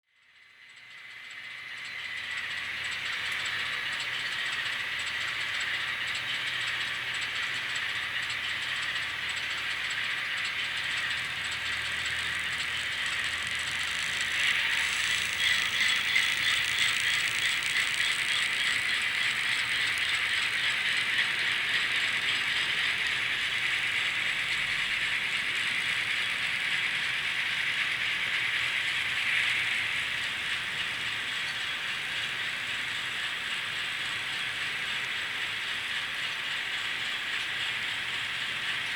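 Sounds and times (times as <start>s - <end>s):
model train rattling whir: 0.3s - 38.9s
fast fine clicking: 12.0s - 21.5s.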